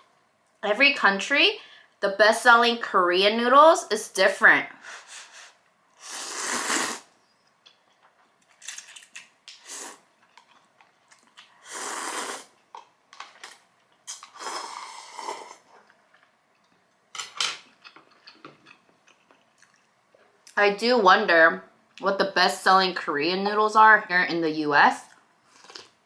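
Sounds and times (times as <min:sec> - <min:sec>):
noodles being slurped: 0:06.0 - 0:07.1, 0:08.6 - 0:12.6.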